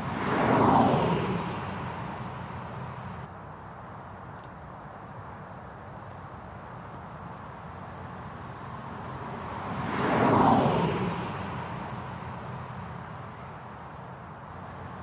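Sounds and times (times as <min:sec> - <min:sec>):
road vehicle passing by: 0:00.0 - 0:03.3, 0:08.0 - 0:15.0.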